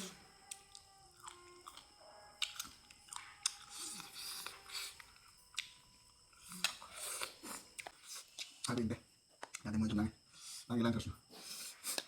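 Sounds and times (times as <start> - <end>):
person chewing food: 0.0 - 8.8, 11.4 - 12.0.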